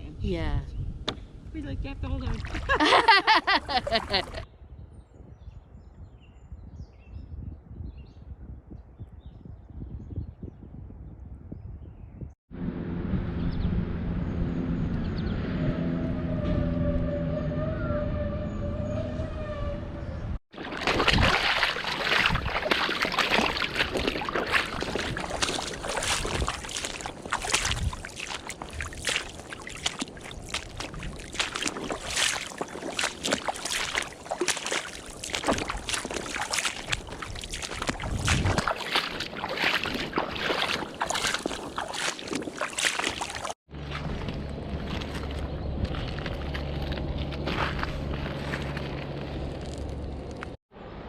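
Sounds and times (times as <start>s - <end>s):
water splashing around kayak: 2.2s - 4.4s, 20.5s - 49.8s.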